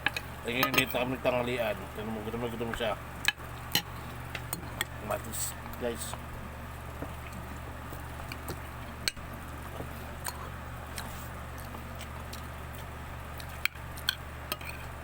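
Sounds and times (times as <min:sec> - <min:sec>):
steady low hum: 0:00.0 - 0:15.0
people chewing: 0:07.0 - 0:09.0, 0:09.6 - 0:15.0.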